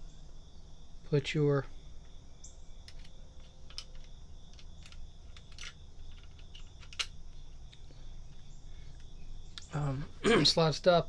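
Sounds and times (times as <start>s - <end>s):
pistol parts clicking into frame: 2.8s - 7.9s.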